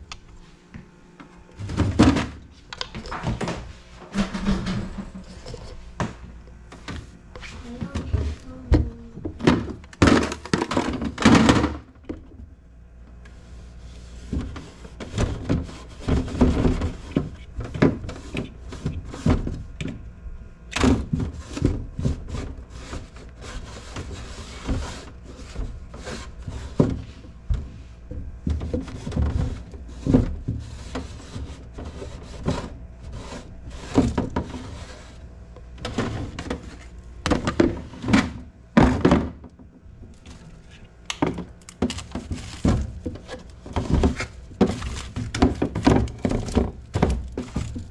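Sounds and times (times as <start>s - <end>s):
containers and drawers clattering: 1.6s - 7.0s, 7.6s - 11.9s, 28.4s - 39.5s, 41.1s - 47.9s
rubbing and rustling: 21.1s - 38.3s.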